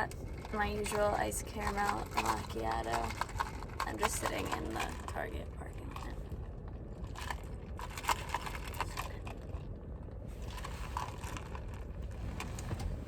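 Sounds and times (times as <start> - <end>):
low steady rumble: 0.0 - 13.0
light clicks and rustles: 10.4 - 13.0.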